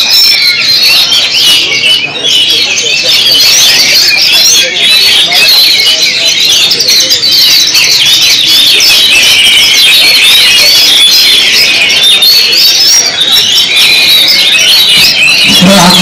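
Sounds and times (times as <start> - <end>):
songbirds singing: 0.0 - 16.0.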